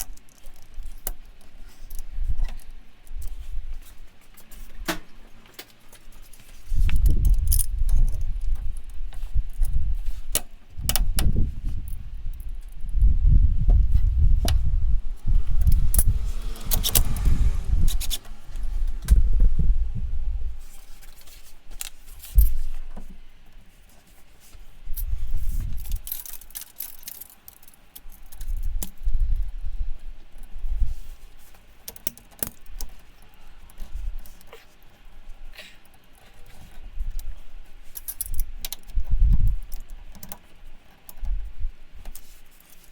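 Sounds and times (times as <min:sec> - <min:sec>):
low rumbling: 0:12.6 - 0:21.8.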